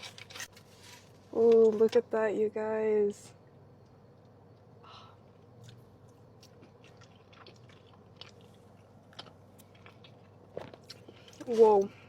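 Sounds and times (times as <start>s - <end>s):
person chewing food: 4.2s - 12.0s.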